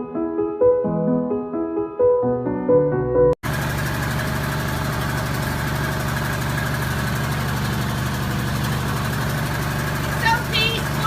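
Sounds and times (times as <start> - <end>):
engine running steadily: 3.4 - 11.0.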